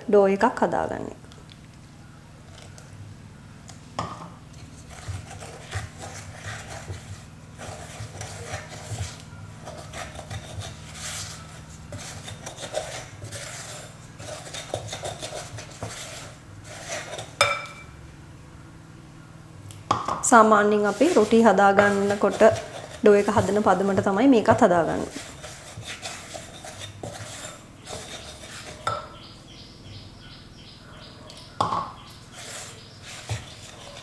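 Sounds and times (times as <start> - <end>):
spoon scraping a bowl: 4.5 - 18.0, 20.3 - 29.4, 31.3 - 34.0
clinks against a bowl: 17.4 - 18.0.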